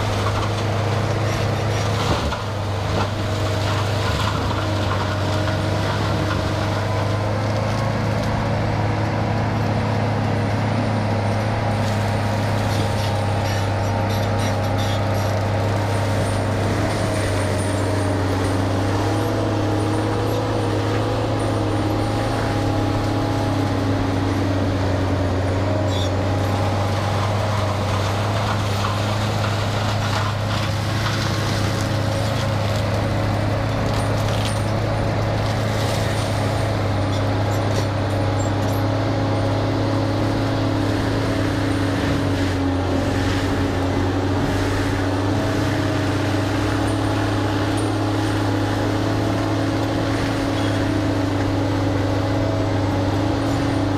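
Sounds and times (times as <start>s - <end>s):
machine engine humming: 0.0s - 53.9s.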